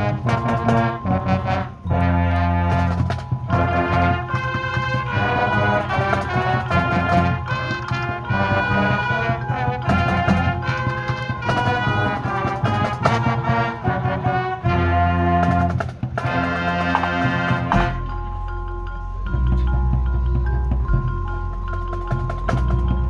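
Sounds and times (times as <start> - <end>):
marching band drums: 0.0 - 18.4, 19.0 - 23.0
brass playing held chords: 0.0 - 18.5
low sustained tone: 11.4 - 12.7.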